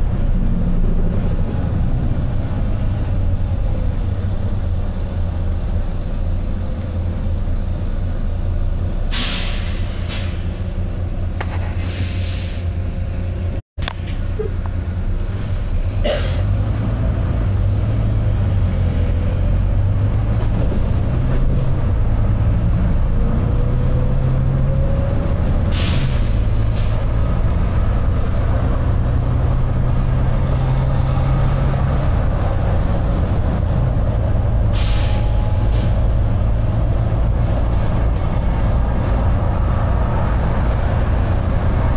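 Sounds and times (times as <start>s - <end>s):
bus diesel engine running: 0.0s - 41.9s.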